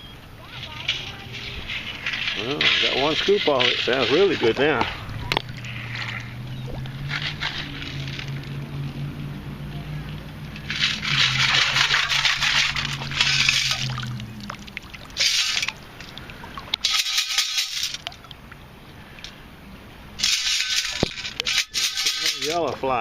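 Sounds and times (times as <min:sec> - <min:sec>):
low steady hum: 0:00.0 - 0:23.0
wet sand rattling through scoop: 0:00.6 - 0:08.7, 0:10.6 - 0:15.8, 0:16.8 - 0:18.1, 0:20.2 - 0:23.0.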